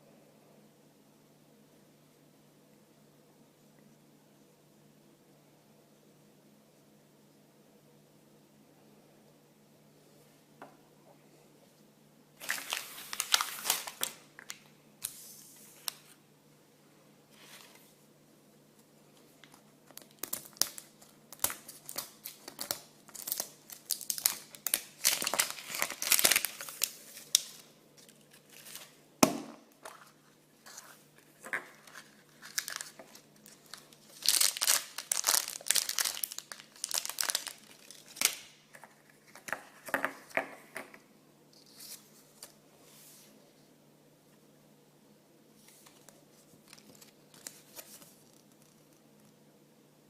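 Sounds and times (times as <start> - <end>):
wrapping crumpled and torn: 12.4 - 16.2, 19.4 - 29.0, 29.9 - 38.6, 45.8 - 49.3.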